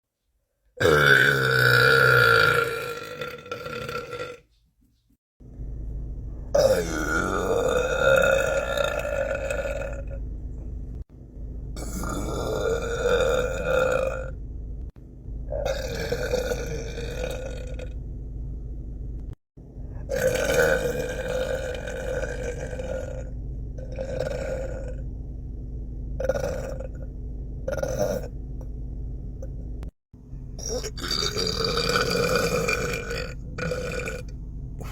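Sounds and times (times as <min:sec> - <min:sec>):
man belching: 0:00.8 - 0:04.4, 0:06.6 - 0:10.2, 0:11.8 - 0:14.3, 0:15.6 - 0:17.9, 0:20.1 - 0:23.3, 0:30.6 - 0:34.9.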